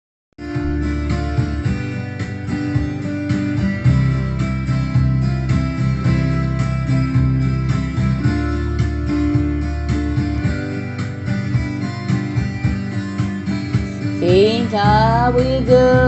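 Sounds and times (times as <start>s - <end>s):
acoustic guitar strumming: 0.4s - 16.0s
low bass notes: 0.4s - 16.0s.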